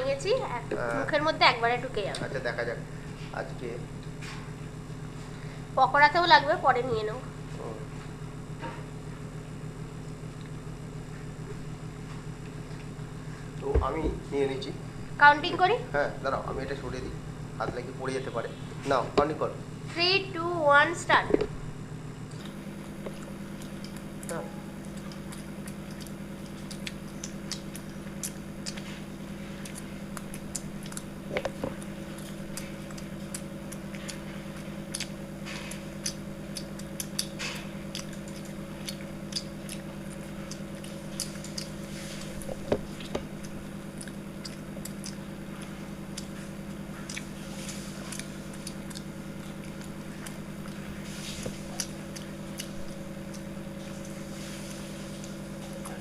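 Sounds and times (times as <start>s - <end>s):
low steady hum: 0.0s - 56.0s
people chewing food: 6.8s - 19.4s, 22.2s - 56.0s
wet mouth clicks: 22.3s - 54.1s.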